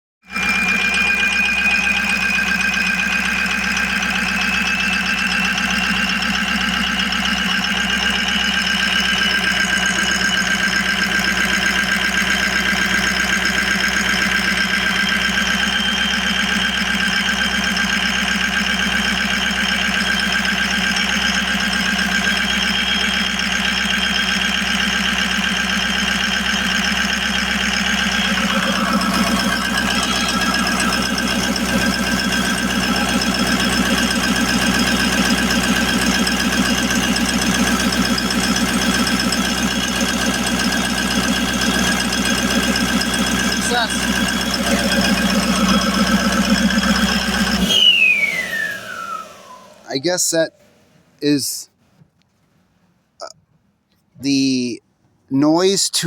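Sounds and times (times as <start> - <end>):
diesel engine idling with clatter: 0.2 - 52.2
high whine rising in pitch: 26.8 - 50.8.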